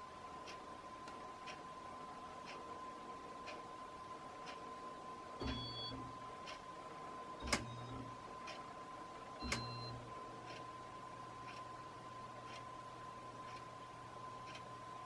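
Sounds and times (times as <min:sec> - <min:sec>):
low fan motor hum: 0:00.0 - 0:15.0
steady high hum: 0:00.0 - 0:15.0
light ticking: 0:12.4 - 0:15.0.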